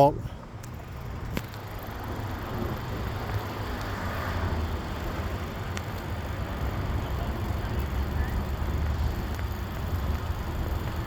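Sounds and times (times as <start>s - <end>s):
rumble of passing cars: 0.0s - 11.0s
faint ticks: 3.2s - 4.0s, 5.7s - 6.1s.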